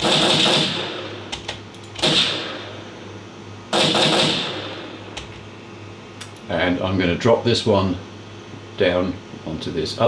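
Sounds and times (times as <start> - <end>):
gunfire bursts: 0.0 - 1.2, 2.0 - 2.8, 3.7 - 5.0.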